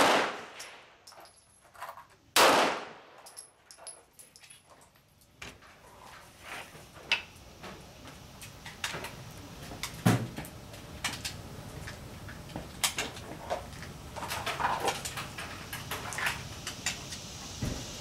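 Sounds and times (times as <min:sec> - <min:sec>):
muffled gunfire: 0:00.0 - 0:00.6, 0:02.4 - 0:03.1.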